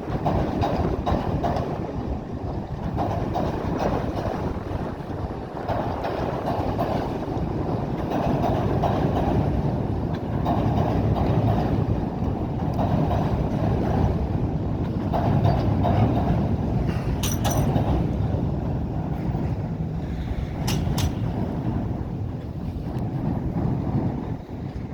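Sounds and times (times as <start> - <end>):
wind buffeting microphone: 0.0 - 24.9.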